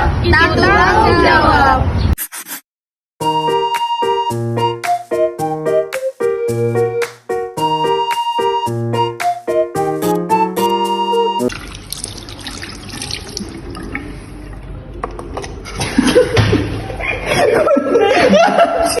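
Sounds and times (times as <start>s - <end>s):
indistinct voices: 0.0s - 2.0s
electronic keyboard music: 3.2s - 11.5s.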